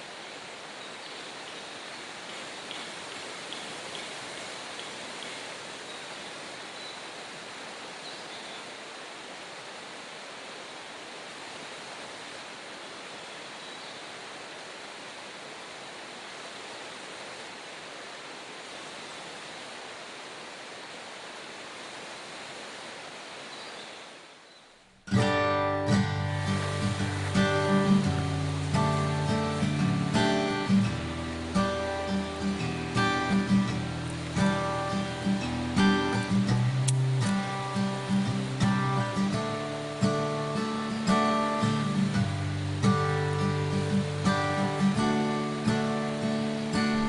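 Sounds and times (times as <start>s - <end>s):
river water rushing: 0.0s - 47.0s
strummed acoustic guitar music: 25.1s - 47.0s.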